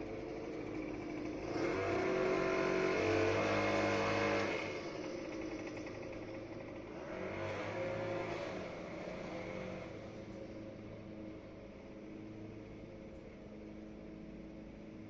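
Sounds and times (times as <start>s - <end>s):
small petrol engine running: 0.0s - 15.0s.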